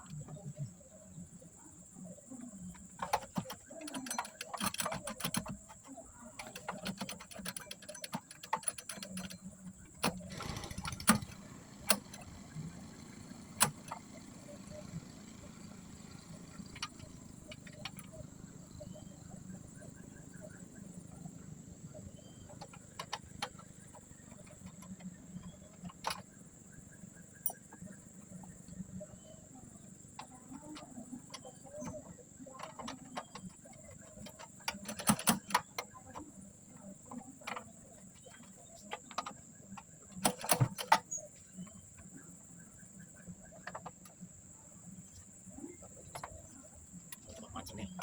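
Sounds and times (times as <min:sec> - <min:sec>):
small parts clicking and knocking: 0:02.4 - 0:42.2, 0:42.8 - 0:48.0
loud rattling clicks: 0:02.7 - 0:29.0, 0:30.1 - 0:36.3, 0:37.1 - 0:42.2.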